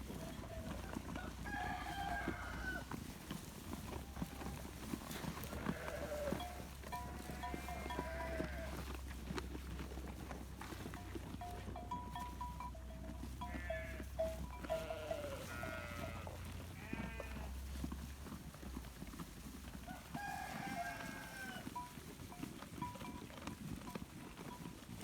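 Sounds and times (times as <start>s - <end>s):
sheep bleating: 0.2s - 3.0s, 5.1s - 8.9s, 13.3s - 17.6s, 20.2s - 21.8s.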